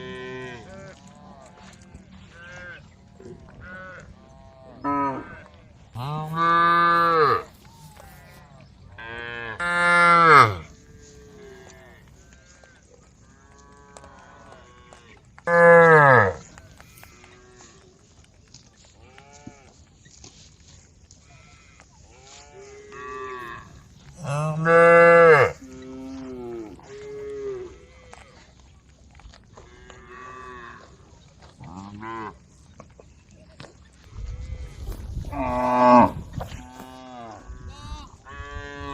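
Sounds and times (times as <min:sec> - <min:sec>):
fainter moos from cattle: 0:00.0 - 0:17.9, 0:21.2 - 0:28.6
cow mooing loudly: 0:06.0 - 0:07.5, 0:09.0 - 0:10.7, 0:15.5 - 0:16.5, 0:22.9 - 0:28.2, 0:35.3 - 0:38.9.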